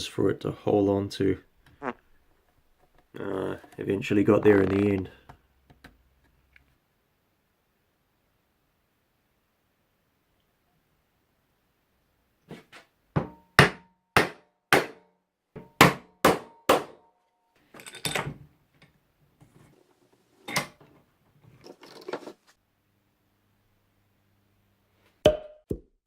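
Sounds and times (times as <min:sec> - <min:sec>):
hammer striking: 0:13.2 - 0:17.1
rough knocks and handling: 0:17.6 - 0:22.6.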